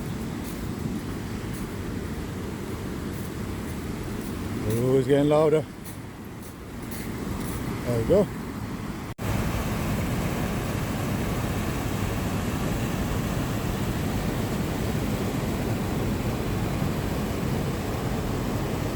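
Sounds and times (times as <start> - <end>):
waterfall rushing: 9.2 - 18.9.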